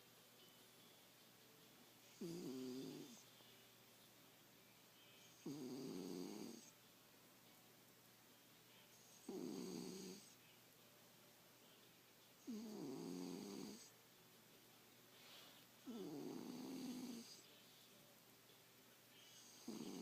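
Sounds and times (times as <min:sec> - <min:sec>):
cat snoring: 0:02.0 - 0:03.3, 0:05.3 - 0:06.7, 0:09.0 - 0:10.4, 0:12.4 - 0:13.9, 0:15.8 - 0:17.5, 0:19.2 - 0:20.0.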